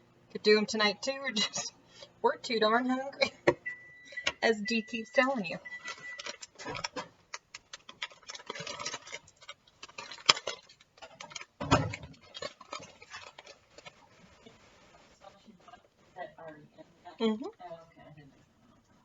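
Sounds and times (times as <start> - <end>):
utensils and dishes clinking: 5.6 - 7.1.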